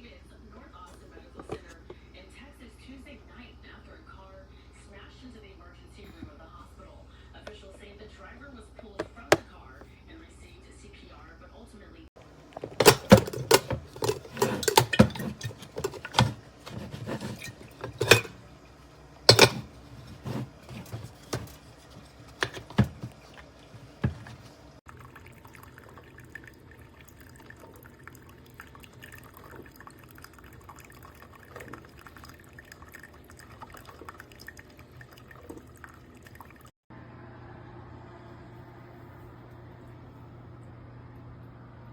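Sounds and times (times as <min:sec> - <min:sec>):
coffee maker parts knocking: 0:12.6 - 0:18.4, 0:19.3 - 0:24.5
liquid being poured: 0:12.6 - 0:36.7.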